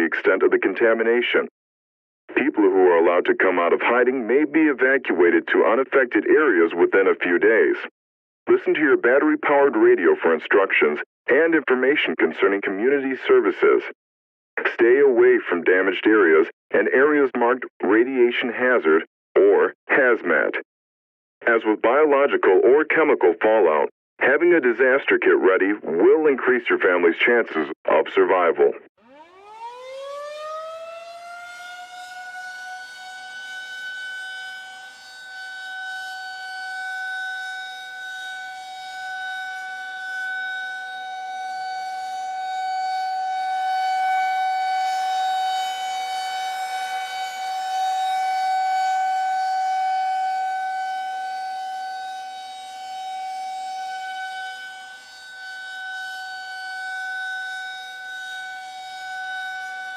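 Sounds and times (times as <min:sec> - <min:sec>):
air-raid siren winding up: 0:29.0 - 0:59.9.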